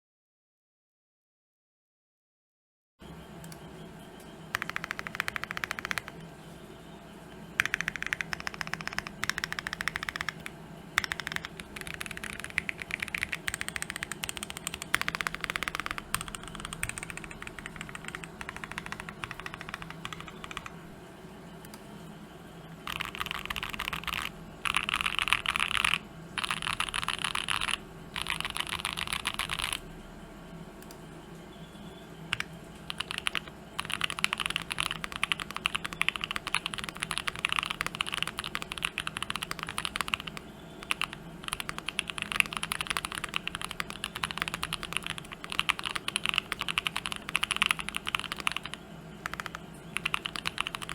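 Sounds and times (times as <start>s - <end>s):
mechanical keyboard keys clacking: 4.5s - 6.2s, 7.6s - 20.8s, 22.8s - 29.8s, 32.3s - 50.9s.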